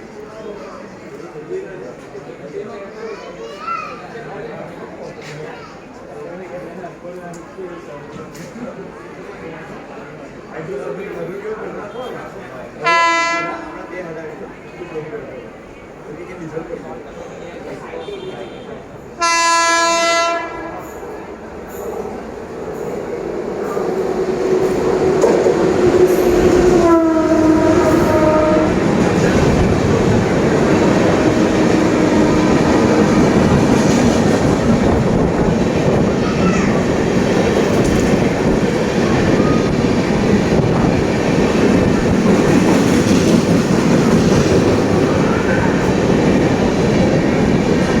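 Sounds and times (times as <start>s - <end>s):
train rumble and wheel clatter: 0.0s - 48.0s
train horn: 12.8s - 13.8s, 18.0s - 20.9s, 25.8s - 29.0s.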